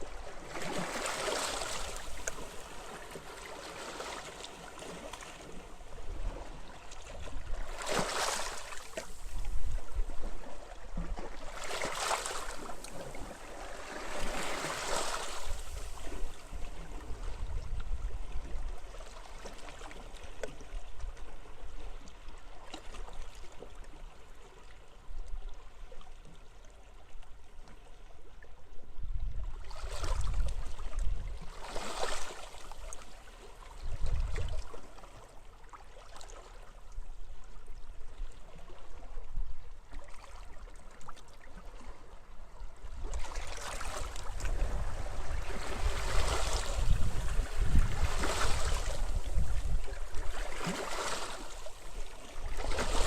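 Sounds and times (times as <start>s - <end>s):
small waves washing on beach: 0.0s - 20.1s, 29.6s - 35.4s, 43.0s - 53.0s
gusts of wind: 44.4s - 49.8s.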